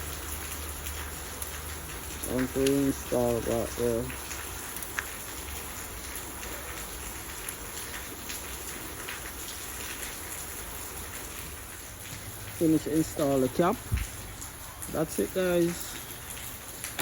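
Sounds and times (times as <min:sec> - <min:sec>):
light ticks and taps of cap: 0:04.8 - 0:05.1.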